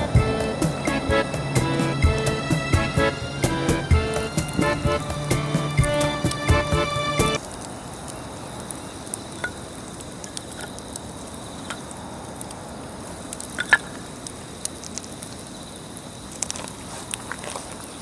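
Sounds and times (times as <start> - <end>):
campfire crackling: 7.2 - 18.0.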